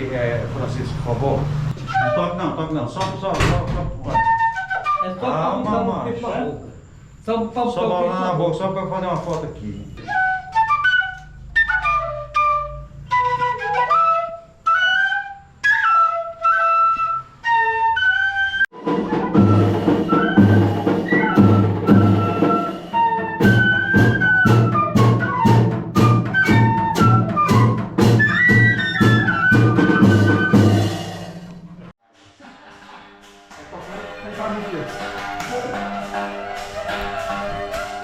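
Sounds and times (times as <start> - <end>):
cane fife playing folk melody: 10.0 - 31.0, 33.6 - 38.0
sharp drum and cymbal strikes: 18.8 - 29.3, 30.0 - 31.8.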